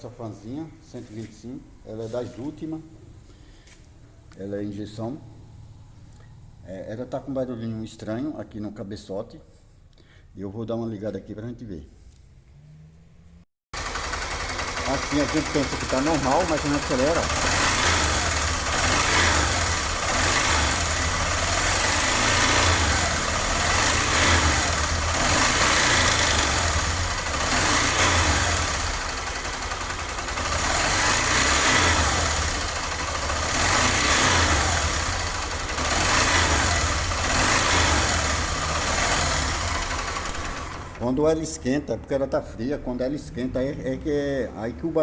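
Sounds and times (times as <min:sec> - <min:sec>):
motorcycle engine running: 0:13.8 - 0:41.2.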